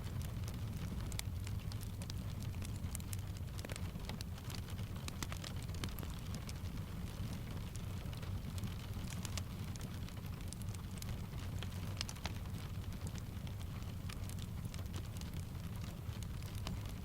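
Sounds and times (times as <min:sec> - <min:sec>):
steady rain: 0:00.0 - 0:17.0
wood fire crackling: 0:00.0 - 0:17.0.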